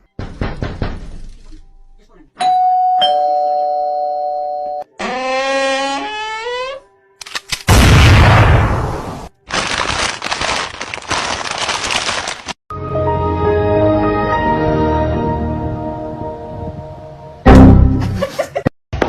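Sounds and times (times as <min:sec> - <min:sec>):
doorbell chime: 0:02.4 - 0:04.9.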